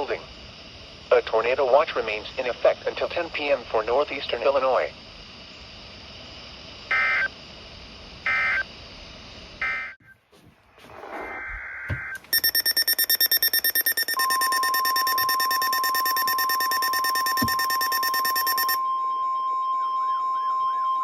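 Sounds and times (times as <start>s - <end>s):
steady warning alarm tone: 6.9s - 7.4s, 8.3s - 8.7s, 9.6s - 10.0s, 11.9s - 21.0s
rapid harsh beeping: 12.3s - 18.8s.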